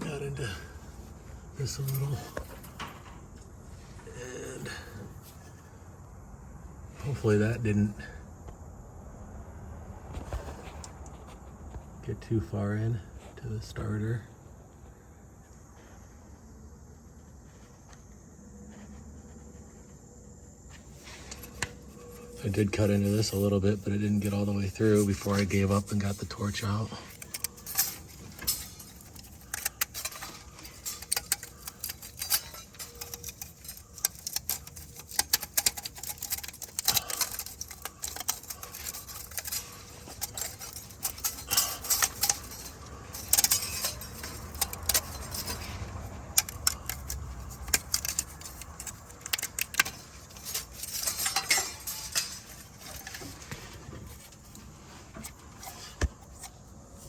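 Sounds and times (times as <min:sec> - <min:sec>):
metal parts clinking: 0:00.0 - 0:03.6, 0:20.8 - 0:57.0.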